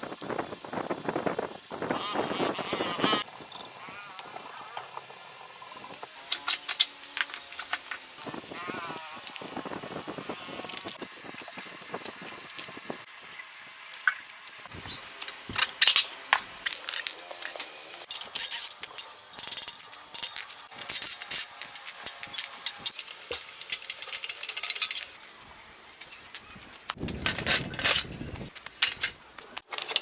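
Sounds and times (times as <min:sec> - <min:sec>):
metal parts clinking and scraping: 0:05.9 - 0:08.4, 0:13.3 - 0:25.3, 0:26.0 - 0:30.0.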